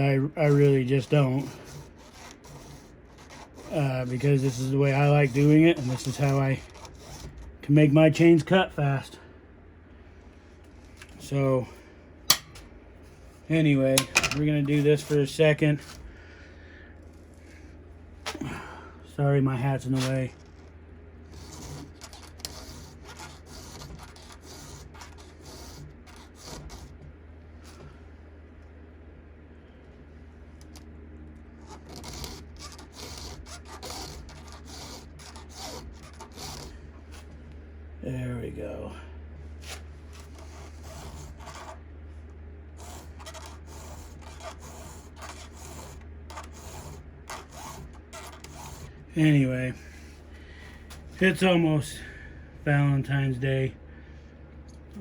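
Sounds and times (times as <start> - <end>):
low steady hum: 0.0 - 55.0
file rasping on chainsaw chain: 0.4 - 7.4, 21.3 - 27.0, 31.7 - 36.8, 40.2 - 41.8, 42.8 - 49.0.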